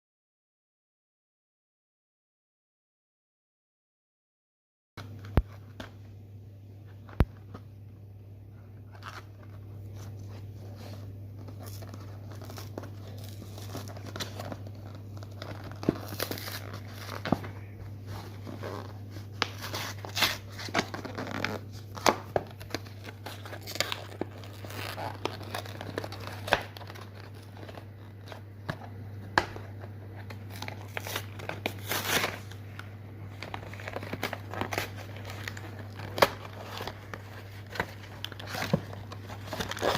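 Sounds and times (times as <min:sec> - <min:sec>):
steady low hum: 0:05.0 - 0:39.9
packaging crinkling and tearing: 0:08.9 - 0:39.9.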